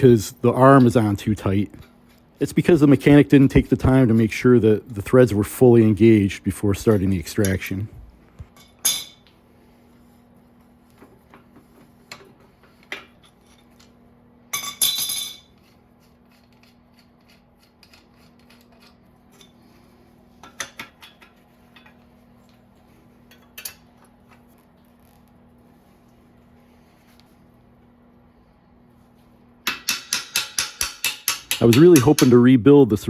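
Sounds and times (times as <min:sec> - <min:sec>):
metal tools and bike parts clinking: 0:08.6 - 0:09.3, 0:14.5 - 0:15.6, 0:23.2 - 0:24.0.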